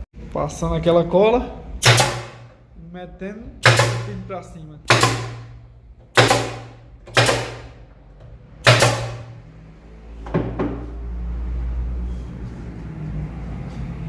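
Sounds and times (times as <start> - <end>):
pin nailer shots: 1.8 - 2.6, 3.6 - 4.3, 4.9 - 7.9, 8.6 - 9.4.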